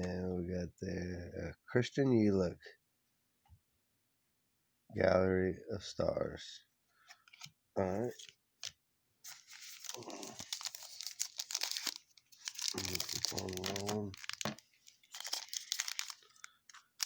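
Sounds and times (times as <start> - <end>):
foil wrapper crinkling: 9.3 - 17.0.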